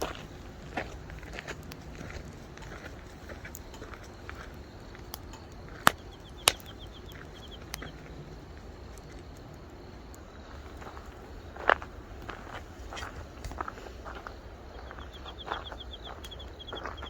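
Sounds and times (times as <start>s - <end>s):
outdoor background noise: 0.0s - 17.0s
rapid high chirping trill: 2.0s - 8.1s, 14.7s - 17.0s.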